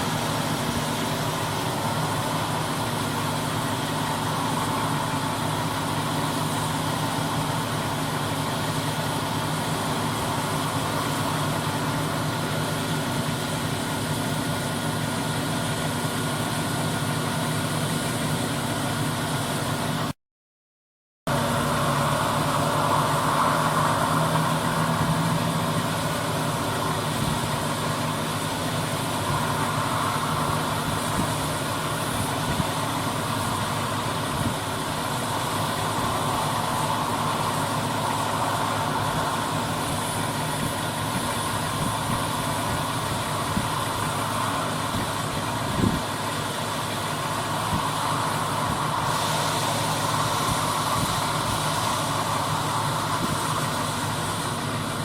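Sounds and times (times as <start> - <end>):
combine harvester engine drone: 0.0 - 20.2, 21.3 - 55.0.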